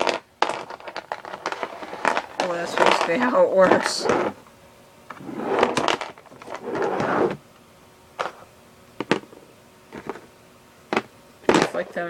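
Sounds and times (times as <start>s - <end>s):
plastic figures rattling and scraping: 0.0s - 4.4s, 5.1s - 7.4s.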